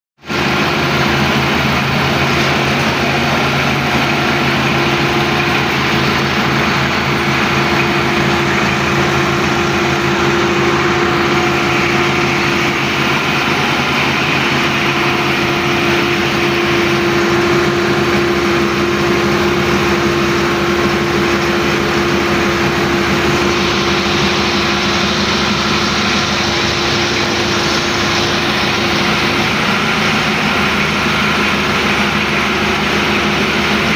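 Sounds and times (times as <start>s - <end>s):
paving machine engine running: 0.2s - 33.9s.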